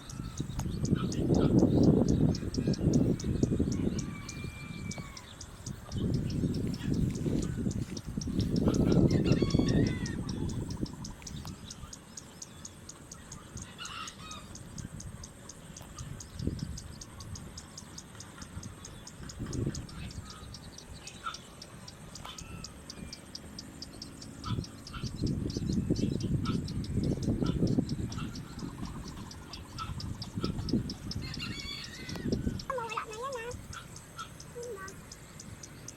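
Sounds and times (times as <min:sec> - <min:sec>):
rapid insect ticking: 0:00.0 - 0:35.9
rooster crowing: 0:03.0 - 0:05.4, 0:08.8 - 0:10.6, 0:31.2 - 0:32.7.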